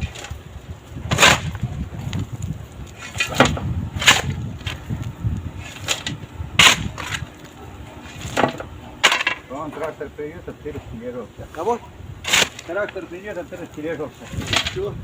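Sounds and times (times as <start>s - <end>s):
low rumble: 0.0s - 9.6s
hand tools clinking on metal: 8.0s - 10.0s.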